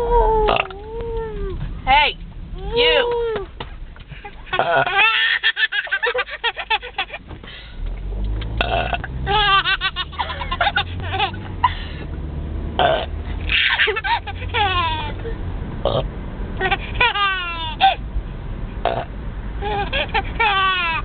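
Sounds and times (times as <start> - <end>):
low car hum: 0.0 - 21.0
girl belching: 0.4 - 0.9, 8.6 - 9.1, 12.8 - 13.1
baby giggling: 4.4 - 7.2, 9.3 - 11.5, 13.5 - 15.4.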